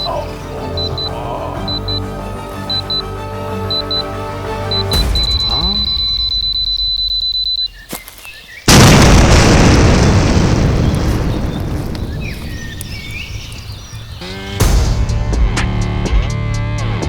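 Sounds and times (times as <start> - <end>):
rapid high beeping: 0.6 - 2.1, 2.7 - 7.8
loud explosion rumbling: 8.7 - 14.2.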